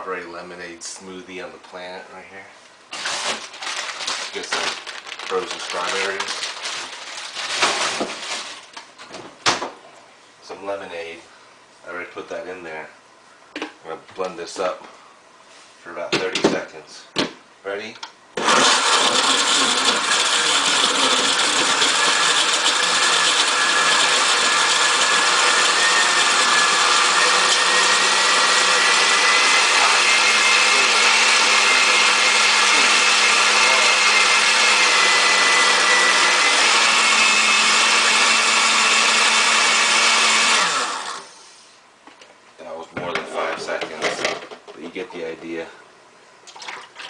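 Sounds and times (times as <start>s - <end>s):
blender motor whining: 3.0s - 8.0s, 18.4s - 41.4s.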